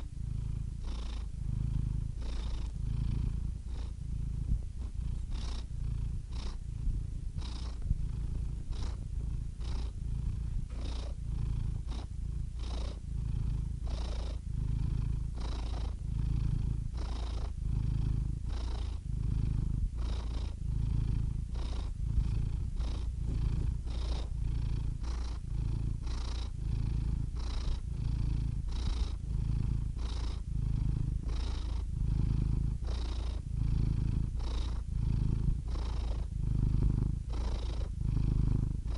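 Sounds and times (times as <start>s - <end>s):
cat purring: 0.0s - 38.9s.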